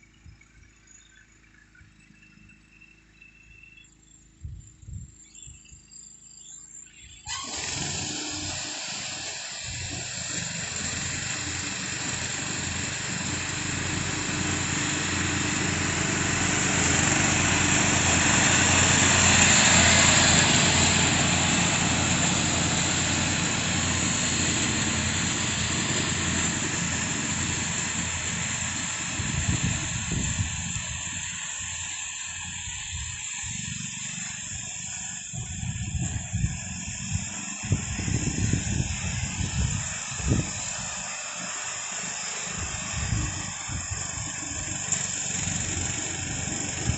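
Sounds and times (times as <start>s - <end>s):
petrol lawn machine engine running: 0.0s - 46.9s.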